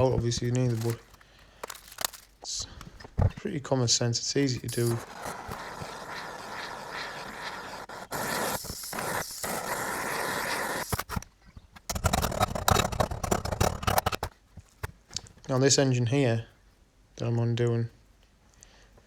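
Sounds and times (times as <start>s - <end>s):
steady hiss: 4.3s - 11.2s.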